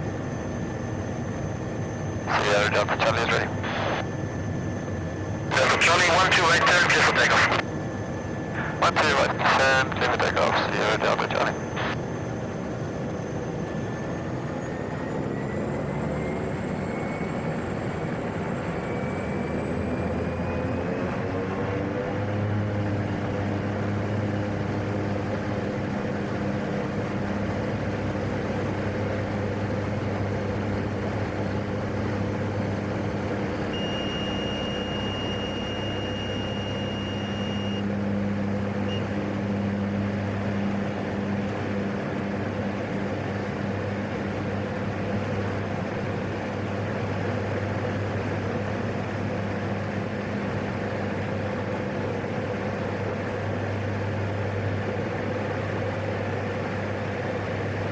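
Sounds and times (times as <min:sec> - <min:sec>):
turboprop engine drone: 0:00.0 - 0:57.9
electronic beep: 0:33.8 - 0:37.8.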